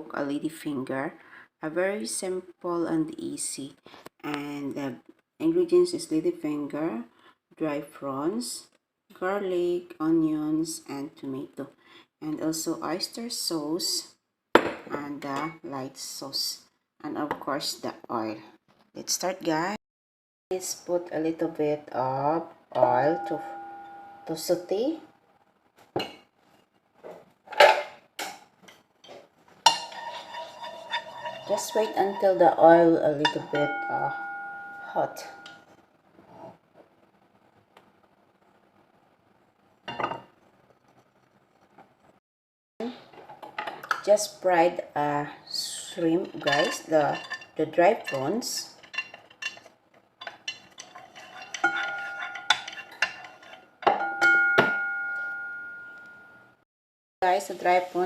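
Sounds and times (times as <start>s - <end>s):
metal cookware clattering: 22.8s - 24.5s, 27.5s - 28.0s, 29.6s - 35.6s, 45.9s - 56.2s
ringing metal clang: 23.0s - 24.4s, 33.2s - 35.6s, 51.4s - 56.4s
utensil scraping a frying pan: 29.1s - 35.6s, 45.6s - 53.8s
prawns frying: 29.6s - 33.5s, 46.0s - 53.8s.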